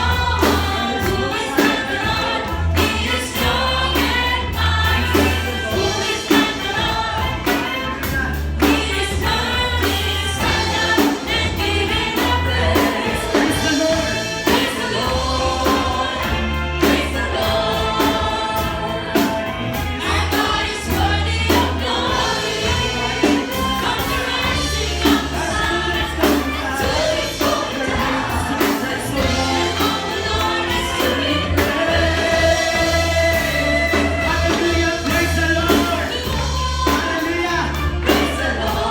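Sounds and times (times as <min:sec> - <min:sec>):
band with bass and drums: 0:00.0 - 0:38.9
choir singing gospel: 0:00.0 - 0:38.9.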